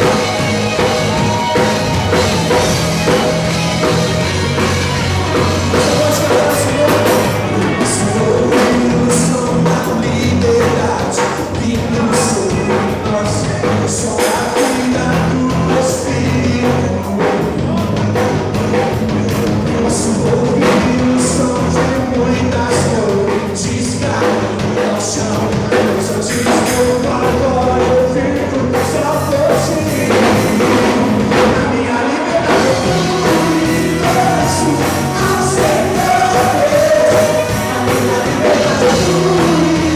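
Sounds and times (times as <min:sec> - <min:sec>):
drum kit: 0:00.0 - 0:39.9
guitar: 0:00.0 - 0:39.9
live rock band playing: 0:00.0 - 0:39.9
person singing: 0:00.0 - 0:39.9.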